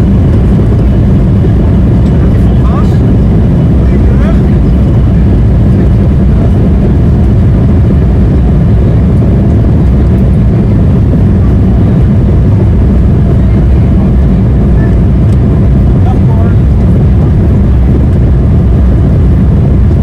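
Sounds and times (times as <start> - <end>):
jet engines roaring in cabin: 0.0 - 20.0.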